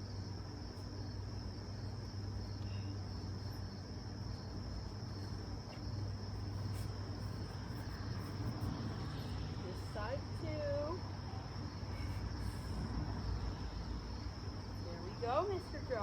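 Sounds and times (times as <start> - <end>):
crickets trilling: 0.0 - 16.0
low steady hum: 0.0 - 16.0.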